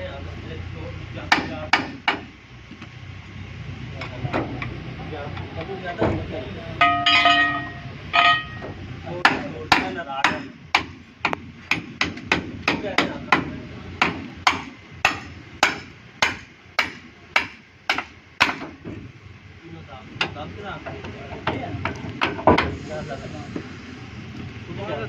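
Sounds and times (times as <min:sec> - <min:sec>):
hammer striking metal: 0:01.3 - 0:02.3, 0:06.8 - 0:18.8.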